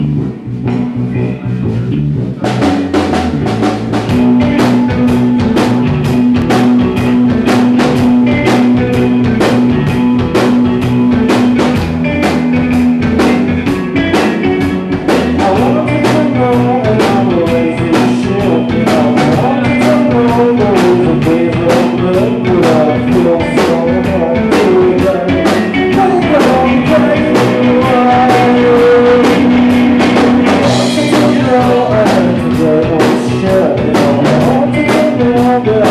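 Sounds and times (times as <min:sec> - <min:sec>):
live rock band playing: 0:00.0 - 0:35.9
steady drum beat: 0:00.0 - 0:35.9.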